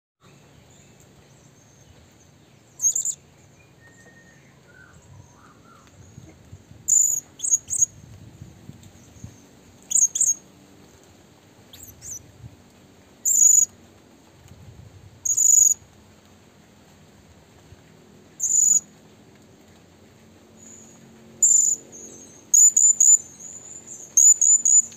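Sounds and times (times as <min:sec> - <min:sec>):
high-pitched bird chirps: 0:02.8 - 0:03.2, 0:06.9 - 0:07.9, 0:09.9 - 0:10.4, 0:11.7 - 0:12.2, 0:13.3 - 0:13.7, 0:15.2 - 0:15.8, 0:18.4 - 0:18.8, 0:21.4 - 0:24.9.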